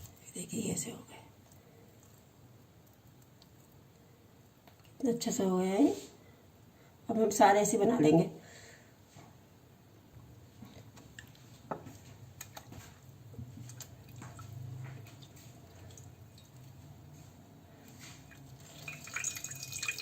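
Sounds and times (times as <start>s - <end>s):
water drips and splashes: 13.5s - 17.1s, 18.0s - 20.0s.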